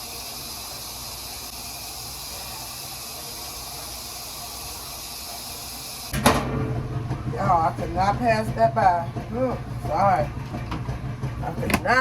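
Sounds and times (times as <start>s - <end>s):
steady hiss: 0.0s - 6.2s.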